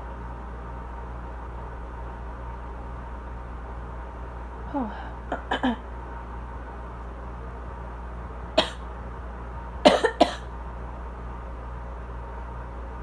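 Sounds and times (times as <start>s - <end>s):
air conditioner hum: 0.0s - 13.0s
person coughing: 5.3s - 5.8s, 8.6s - 8.8s, 9.9s - 10.5s.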